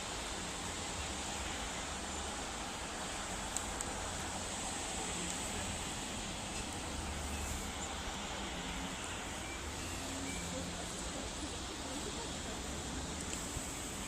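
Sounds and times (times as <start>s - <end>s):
outdoor background hiss: 0.0s - 14.0s
faint clicks: 3.5s - 4.0s, 13.2s - 13.5s.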